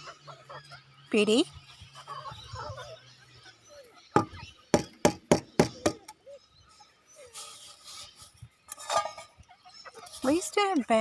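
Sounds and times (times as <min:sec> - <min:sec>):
chicken clucking: 0:00.0 - 0:01.0, 0:01.8 - 0:04.4
sharp knocks: 0:04.2 - 0:06.1.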